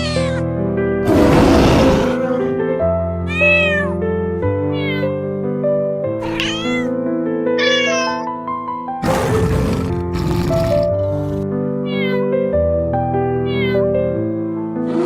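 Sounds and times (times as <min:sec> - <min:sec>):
cat meowing: 0:00.0 - 0:00.5, 0:03.3 - 0:04.0, 0:04.6 - 0:05.2, 0:06.2 - 0:07.0, 0:07.6 - 0:08.3, 0:11.8 - 0:12.4, 0:13.4 - 0:13.9
soft piano and string music: 0:00.0 - 0:15.0.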